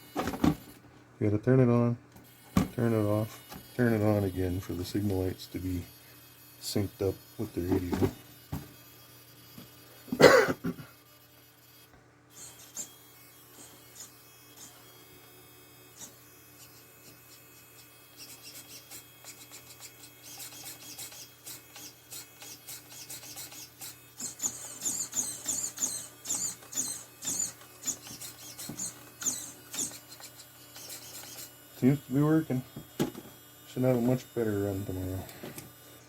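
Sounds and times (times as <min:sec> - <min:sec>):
scratchy rubbing and clicking: 0:18.2 - 0:31.5.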